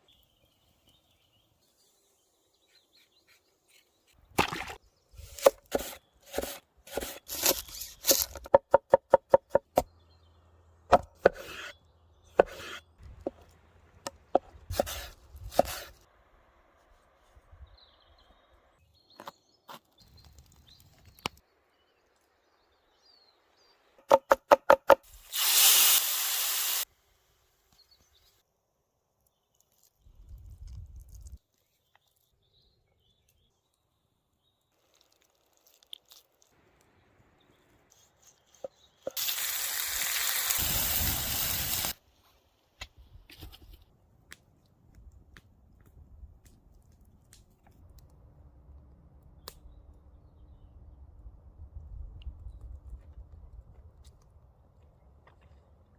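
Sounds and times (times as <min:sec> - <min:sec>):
loud hissing bursts: 0:25.1 - 0:26.9, 0:39.2 - 0:42.0.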